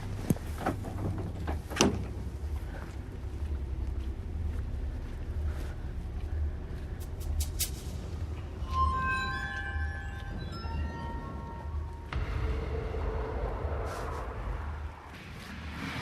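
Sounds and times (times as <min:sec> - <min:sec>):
vehicle interior rumble: 0:00.0 - 0:08.5.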